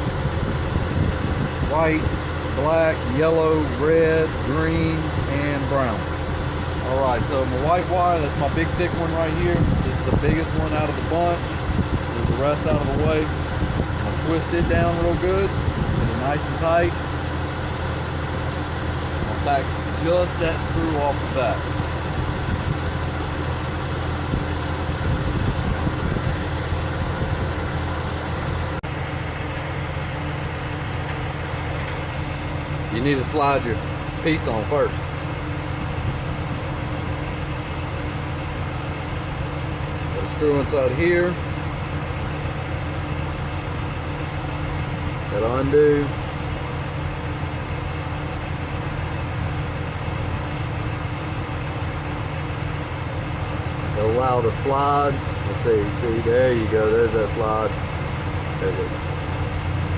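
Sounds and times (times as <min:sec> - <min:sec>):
engine idling drone: 0:00.0 - 0:59.9.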